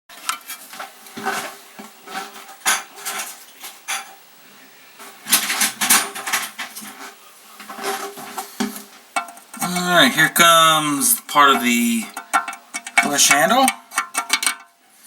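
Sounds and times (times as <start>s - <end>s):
small hard parts clinking: 11.4s - 14.8s.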